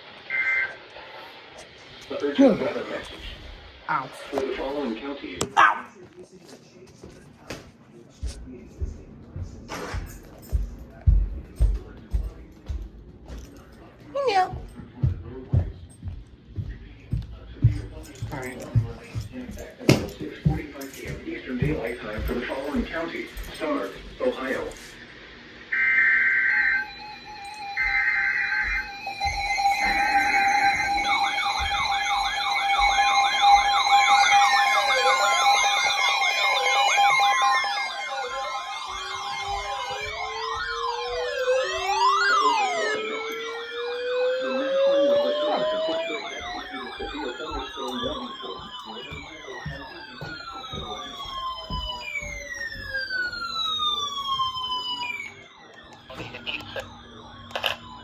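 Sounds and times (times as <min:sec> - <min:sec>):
wailing siren: 0:00.0 - 0:06.0, 0:16.6 - 0:58.0
steady high electronic tone: 0:17.2 - 0:58.0
yelping siren: 0:25.6 - 0:58.0.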